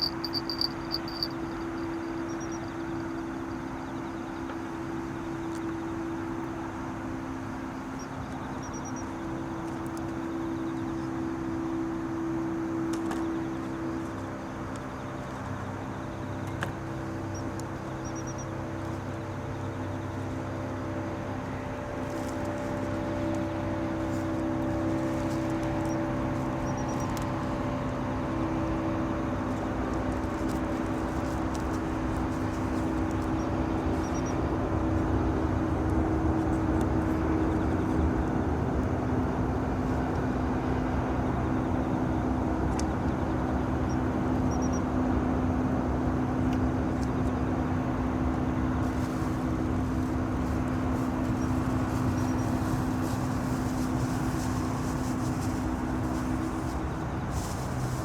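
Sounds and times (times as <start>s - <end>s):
faint high chirps: 0.0s - 3.2s
engine humming: 0.0s - 58.0s.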